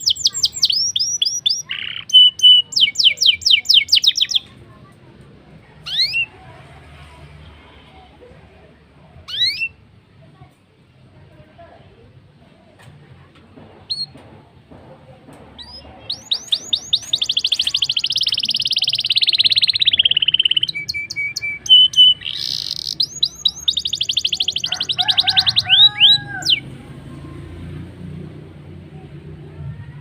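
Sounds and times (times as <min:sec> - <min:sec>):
bird singing fast trills: 0:00.0 - 0:04.5, 0:05.8 - 0:06.3, 0:09.3 - 0:09.8, 0:15.6 - 0:26.6.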